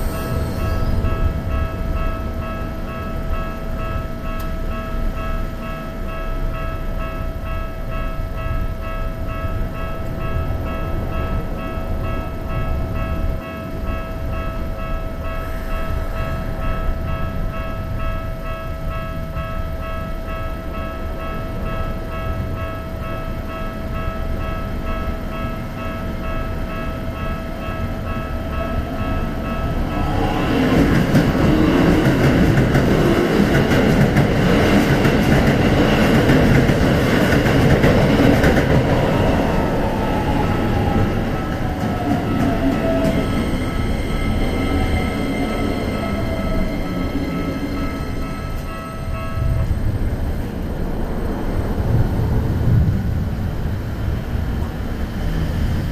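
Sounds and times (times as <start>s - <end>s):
level-crossing warning bell: 0.0s - 55.9s
train wheels clattering: 28.8s - 55.9s.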